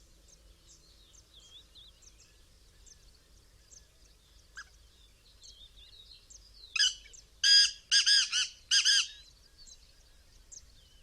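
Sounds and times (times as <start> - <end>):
faint small bird chirps: 0.0 - 11.0
francolin calling: 6.7 - 9.8.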